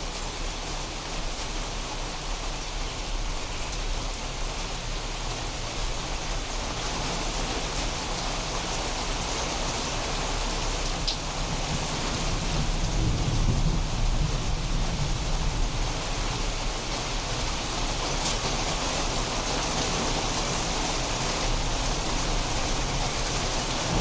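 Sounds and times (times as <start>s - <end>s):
heavy rain falling: 0.0s - 24.0s
low rumble of thunder: 9.0s - 24.0s.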